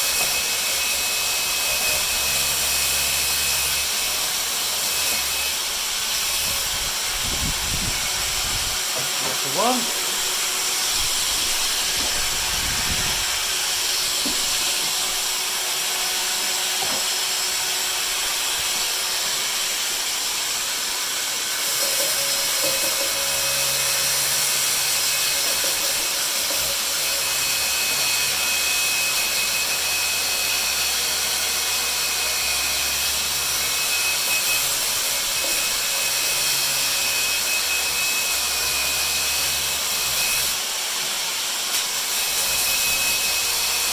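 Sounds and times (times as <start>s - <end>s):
power tool hissing: 3.8s - 20.9s.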